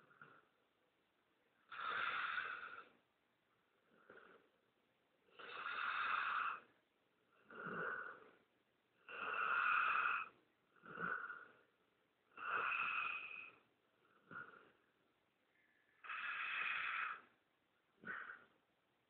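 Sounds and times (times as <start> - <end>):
dog snoring: 1.7 - 3.0, 3.8 - 4.6, 5.3 - 11.7, 12.3 - 14.8, 16.0 - 17.4, 18.0 - 18.6.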